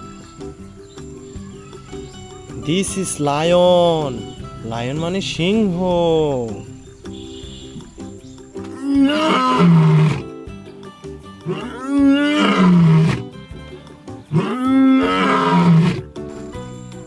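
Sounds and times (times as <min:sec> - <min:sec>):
background music: 0:00.0 - 0:17.0
lion roaring: 0:08.7 - 0:10.3, 0:11.4 - 0:13.4, 0:14.3 - 0:16.1.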